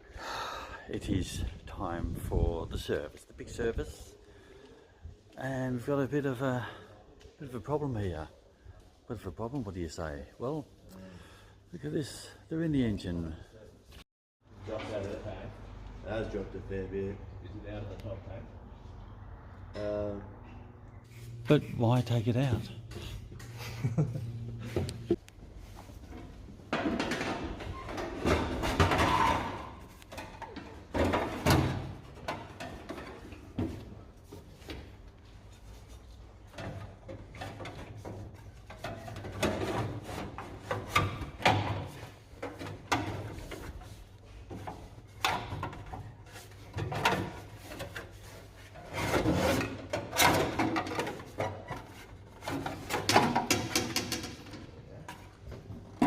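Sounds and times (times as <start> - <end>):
tools knocking and scraping: 24.6 - 35.0, 36.4 - 56.0.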